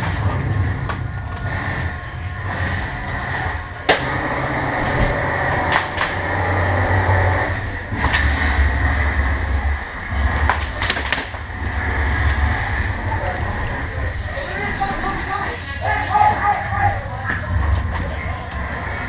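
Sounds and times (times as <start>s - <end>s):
low rumbling noise: 0.0s - 19.0s
airsoft guns firing: 3.9s - 4.8s.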